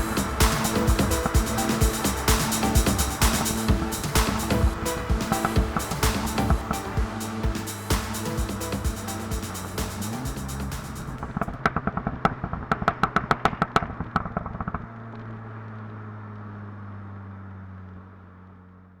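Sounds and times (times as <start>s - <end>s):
car engine idling: 0.0s - 12.7s
exhaust pops and crackles: 8.0s - 18.2s.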